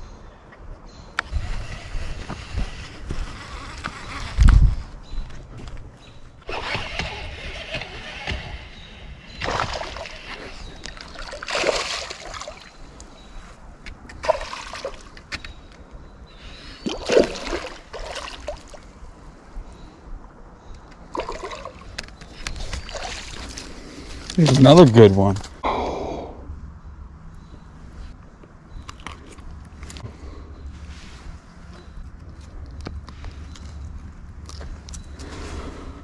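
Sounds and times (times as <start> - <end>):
river water splashing: 9.4 - 12.9, 14.2 - 15.2, 16.8 - 19.0, 21.1 - 22.0, 22.8 - 24.8.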